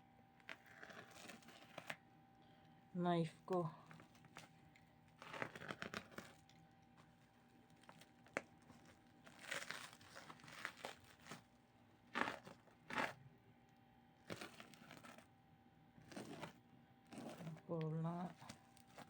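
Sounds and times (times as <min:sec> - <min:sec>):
knife tearing plastic wrapping: 0:05.1 - 0:06.5, 0:07.6 - 0:11.5, 0:12.1 - 0:13.2, 0:14.2 - 0:15.3, 0:16.0 - 0:19.0.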